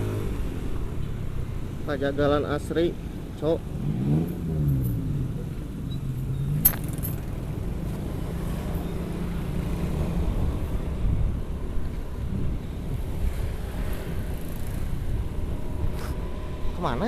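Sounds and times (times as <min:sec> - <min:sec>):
road rumble: 0:00.0 - 0:17.0
wind: 0:00.0 - 0:17.0
motorcycle engine cruising: 0:03.4 - 0:17.0.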